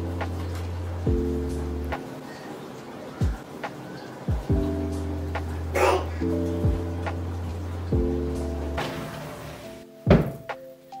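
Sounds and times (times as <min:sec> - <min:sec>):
drum hit: 0:10.1 - 0:10.5.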